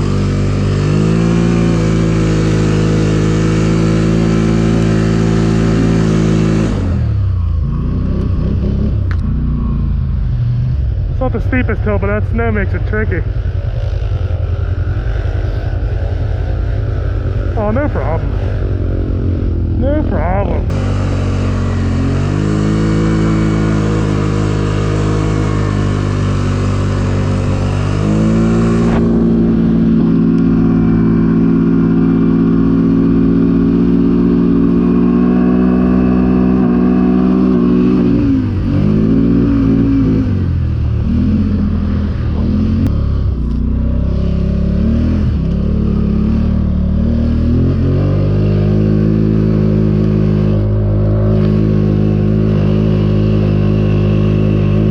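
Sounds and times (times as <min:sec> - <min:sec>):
atv engine revving: 0:00.0 - 0:54.9.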